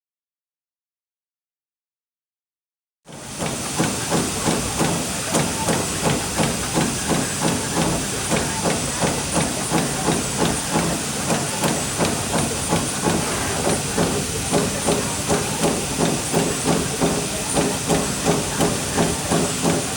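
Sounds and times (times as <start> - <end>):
turret punch machine strokes: 3.1 - 19.9
steady hiss: 9.7 - 17.7.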